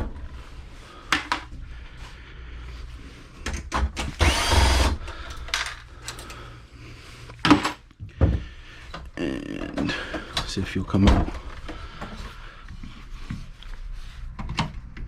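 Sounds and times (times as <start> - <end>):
power drill whining: 4.2 - 5.1.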